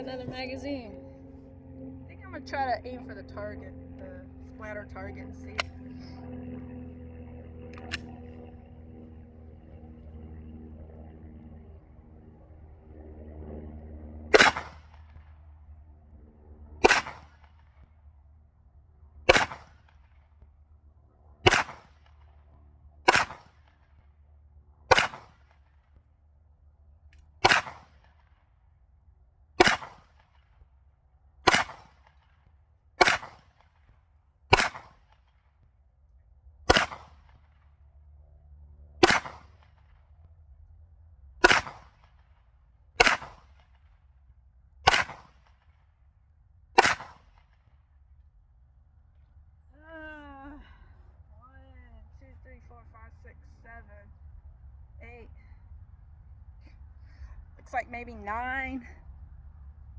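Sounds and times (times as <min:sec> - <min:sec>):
pistol shots: 0:14.3 - 0:15.0, 0:16.8 - 0:17.5, 0:19.3 - 0:19.8, 0:21.4 - 0:22.0, 0:23.1 - 0:23.6, 0:24.9 - 0:25.4, 0:27.4 - 0:28.1, 0:29.6 - 0:30.2, 0:31.4 - 0:32.2, 0:33.0 - 0:33.6, 0:34.5 - 0:35.0, 0:36.7 - 0:37.4, 0:39.0 - 0:39.6, 0:41.4 - 0:42.0, 0:43.0 - 0:43.6, 0:44.9 - 0:45.5, 0:46.8 - 0:47.4.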